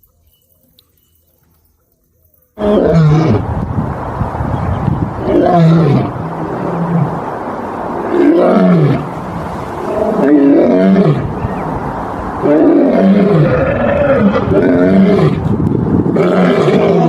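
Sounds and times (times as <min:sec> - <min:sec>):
lion roaring: 0:09.8 - 0:11.3, 0:12.4 - 0:15.5, 0:16.1 - 0:17.0.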